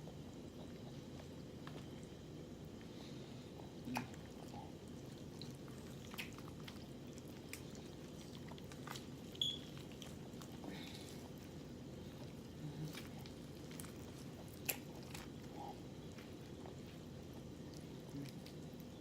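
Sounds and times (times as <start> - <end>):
steady low hum: 0.0 - 19.0
wet chewing: 0.4 - 19.0
lip smacks and clicks: 3.9 - 4.2, 6.1 - 6.7, 14.5 - 15.3.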